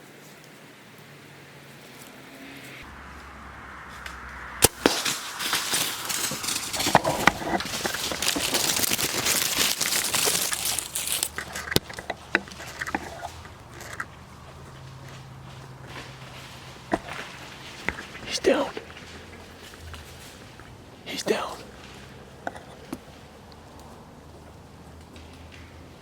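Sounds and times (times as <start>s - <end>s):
deer crashing through dry leaves: 2.9s - 20.8s
twigs snapping: 3.0s - 24.0s
sharp twig snap: 3.9s - 6.8s.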